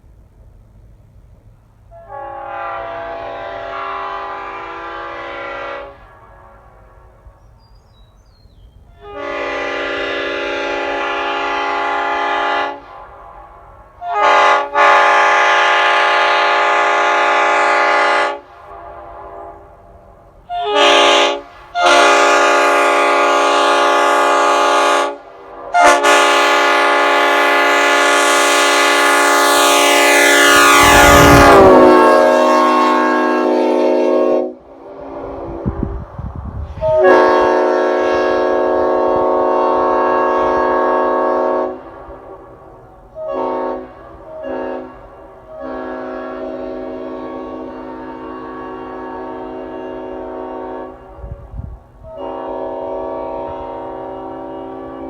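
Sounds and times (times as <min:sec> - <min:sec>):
air train horn chord blasts: 0:01.9 - 0:07.4, 0:08.9 - 0:36.0, 0:36.7 - 0:55.0
short horn stabs: 0:09.0 - 0:19.9, 0:20.5 - 0:34.6.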